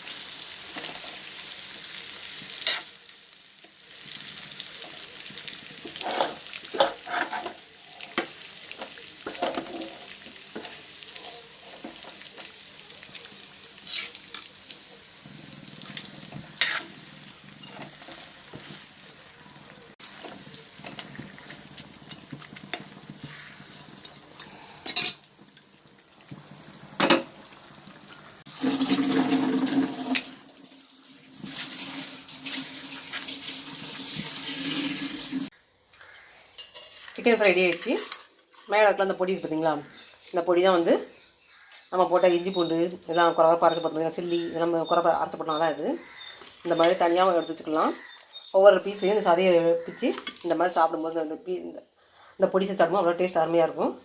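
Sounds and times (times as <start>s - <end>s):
chicken sizzling in a pan: 0.0s - 54.0s
metal spoon scraping a pan: 2.6s - 2.9s, 5.8s - 8.3s, 9.3s - 12.0s, 13.8s - 14.5s, 15.8s - 18.7s, 20.0s - 25.2s, 36.2s - 39.0s.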